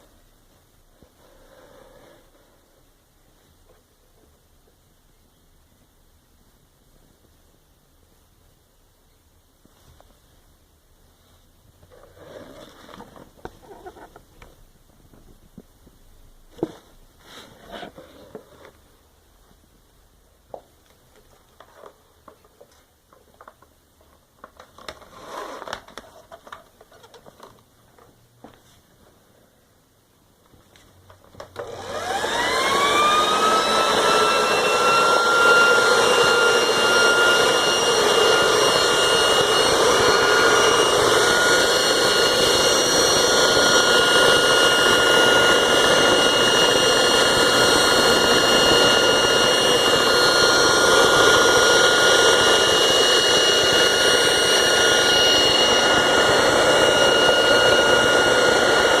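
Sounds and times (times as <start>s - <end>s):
floor polisher motor whining: 31.6s - 59.0s.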